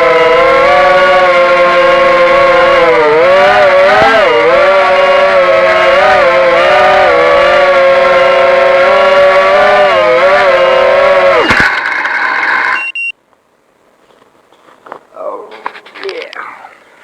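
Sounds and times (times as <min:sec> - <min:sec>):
quadcopter motors whining: 0:00.0 - 0:13.1
short high beep: 0:12.7 - 0:13.1.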